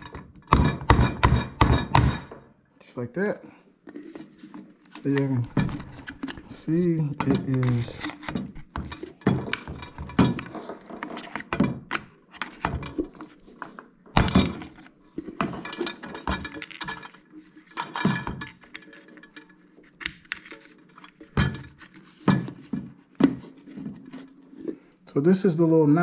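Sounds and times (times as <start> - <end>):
clinks and clatters of metal unit: 15.4 - 19.7.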